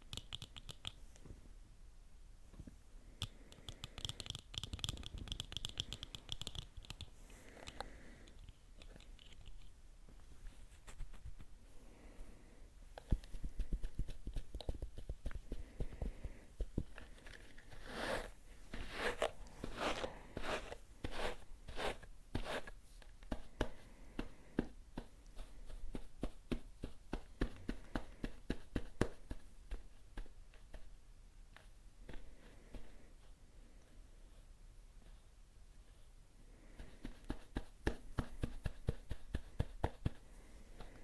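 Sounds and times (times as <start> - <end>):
scratchy strokes: 13.1 - 22.8.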